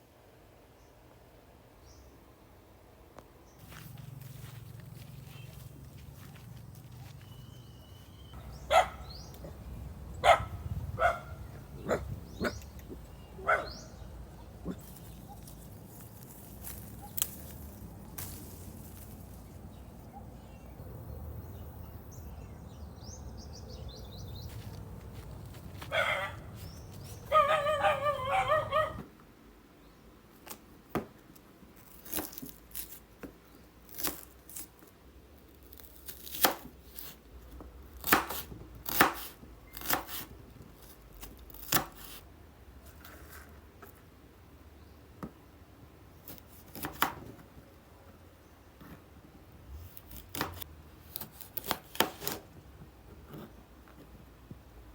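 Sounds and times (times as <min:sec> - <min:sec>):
dog barking: 0:08.4 - 0:09.6, 0:10.2 - 0:12.6, 0:13.3 - 0:14.0, 0:25.9 - 0:29.0.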